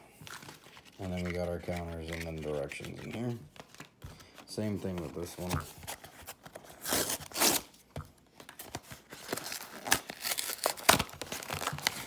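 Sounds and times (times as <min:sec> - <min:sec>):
packaging crinkling and rustling: 0:00.0 - 0:07.7, 0:08.4 - 0:12.0
cardboard box tearing: 0:05.4 - 0:07.7, 0:08.9 - 0:12.0.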